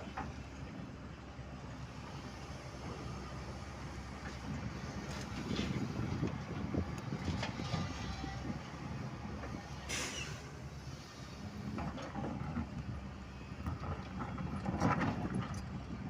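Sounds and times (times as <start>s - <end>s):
diesel machinery rumbling: 0.0s - 16.0s
short hiss: 9.9s - 10.5s.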